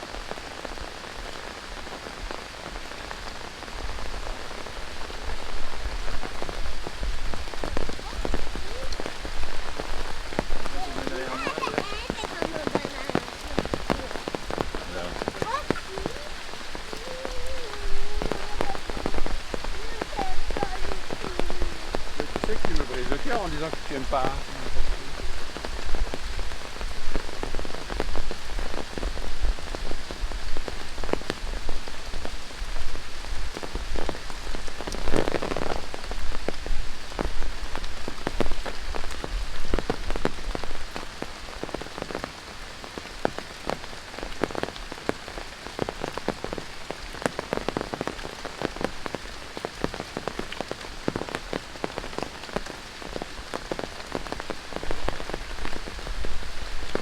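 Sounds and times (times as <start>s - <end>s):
close raindrop hits: 0.0s - 57.0s
rain hissing: 0.0s - 57.0s.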